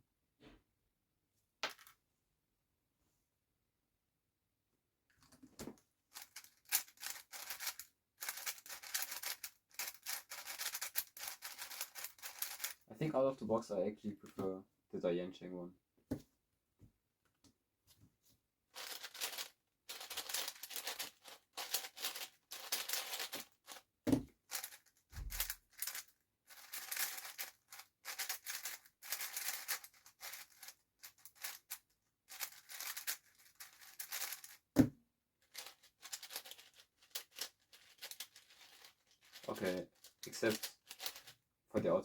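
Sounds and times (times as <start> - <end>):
puzzle cube pieces clattering: 6.1 - 12.8, 18.8 - 23.9, 24.5 - 34.6, 35.5 - 41.3.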